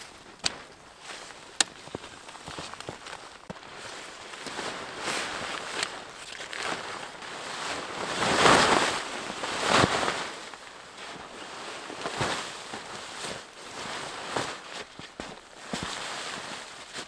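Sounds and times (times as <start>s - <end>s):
footsteps crunching in snow: 0.0s - 17.0s.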